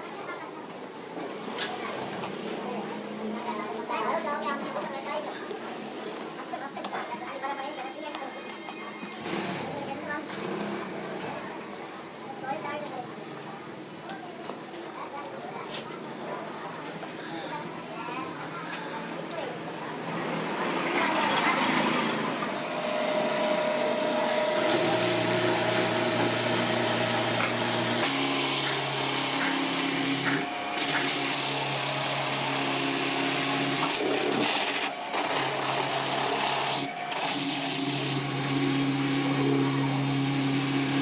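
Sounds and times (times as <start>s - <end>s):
small power tool running: 20.1s - 41.0s.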